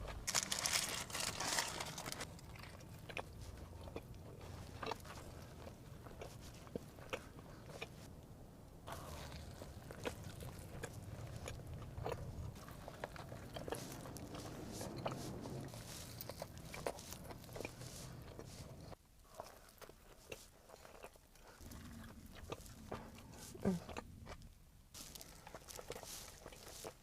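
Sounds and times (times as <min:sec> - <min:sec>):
person chewing crunchy food: 0:00.0 - 0:08.2, 0:08.8 - 0:27.0
low steady hum: 0:00.0 - 0:20.7.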